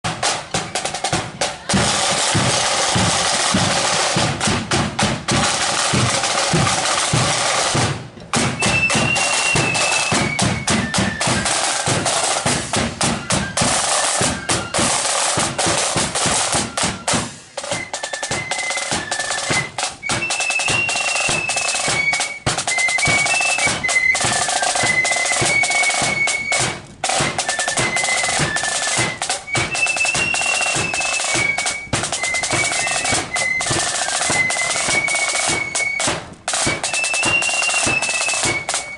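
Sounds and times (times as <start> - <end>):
snare and bass drums: 0.0 - 38.9
flutes playing high melody: 8.5 - 38.9.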